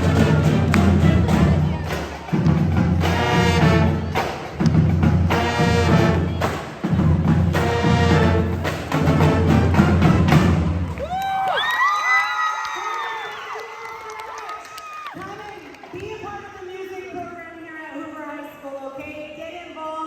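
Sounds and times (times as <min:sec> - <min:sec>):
drum hits: 0:00.0 - 0:10.9
school band playing: 0:00.0 - 0:11.0.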